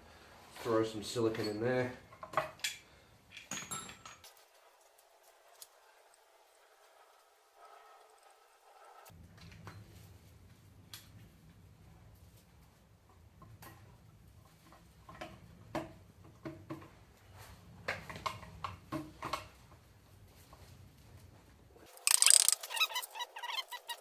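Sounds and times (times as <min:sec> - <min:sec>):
hand tools clicking on metal: 0:22.0 - 0:23.1.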